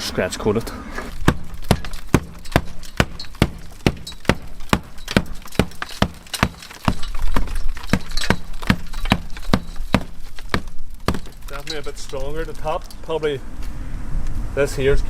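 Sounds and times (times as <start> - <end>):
tool knocking on cement render: 1.2 - 11.5.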